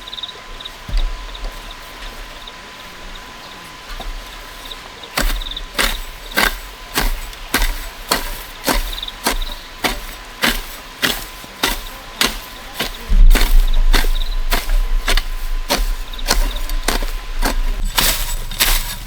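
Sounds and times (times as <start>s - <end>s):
insects chirping faintly: 0.0s - 10.4s, 11.8s - 19.0s
blade chopping bamboo: 5.2s - 19.0s.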